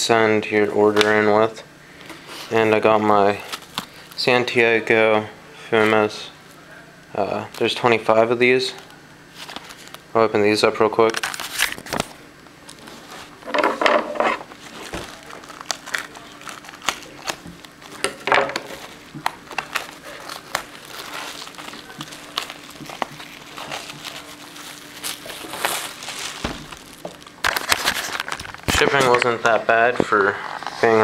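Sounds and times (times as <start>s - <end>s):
packaging crinkling and tearing: 3.4s - 4.2s, 9.4s - 10.0s, 11.0s - 13.4s, 14.5s - 29.4s.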